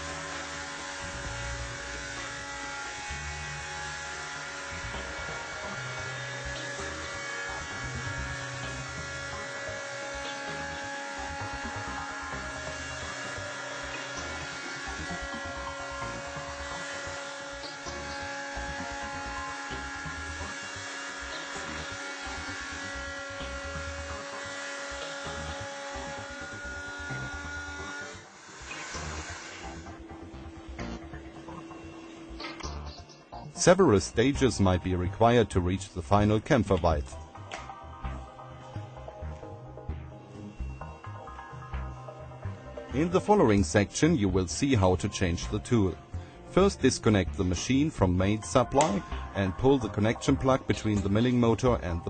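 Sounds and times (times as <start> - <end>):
milling cutter cutting metal edge: 0.0 - 31.0
milling machine motor whine: 0.0 - 52.0.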